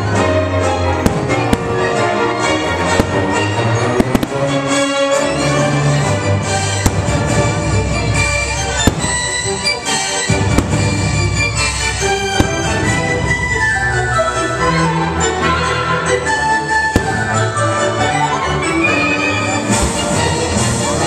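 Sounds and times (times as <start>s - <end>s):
orchestral music: 0.0s - 21.0s
fireworks bursting: 1.0s - 2.1s, 2.7s - 4.9s, 6.5s - 14.2s, 16.7s - 17.7s.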